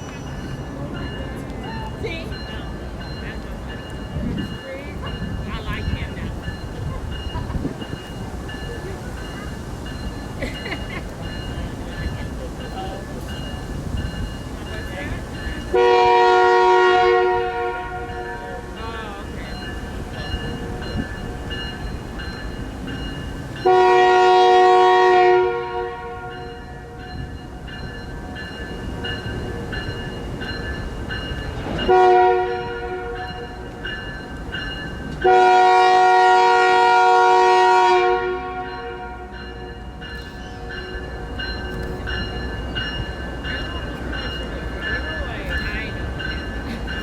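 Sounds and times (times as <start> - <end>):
train rumbling: 0.0 - 47.0
locomotive air horn blasts: 15.7 - 18.7, 23.6 - 27.0, 31.9 - 33.4, 35.2 - 39.4.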